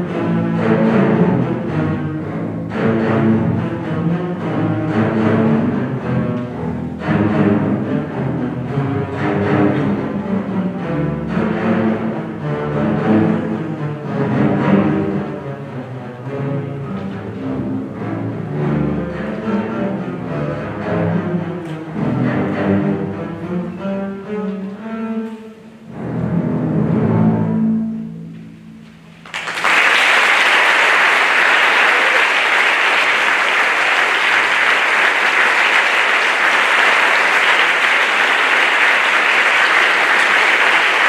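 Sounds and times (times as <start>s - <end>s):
double bass ensemble playing: 0.0s - 29.8s, 30.6s - 41.0s
audience applause: 29.2s - 41.0s.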